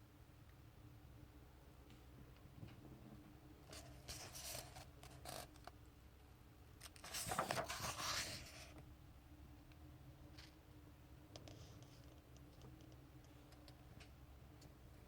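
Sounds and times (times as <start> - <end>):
faint steady hum: 0.0 - 15.0
comic book pages turning: 6.8 - 8.7.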